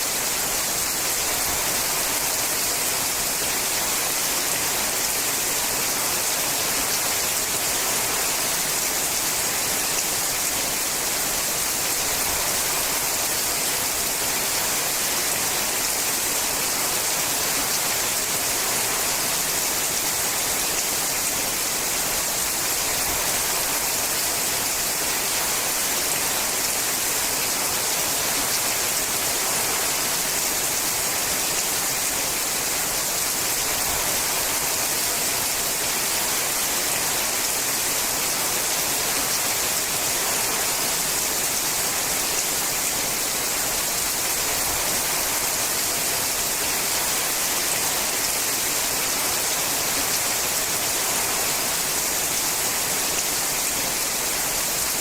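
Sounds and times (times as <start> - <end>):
rain on a metal roof: 0.0 - 55.0.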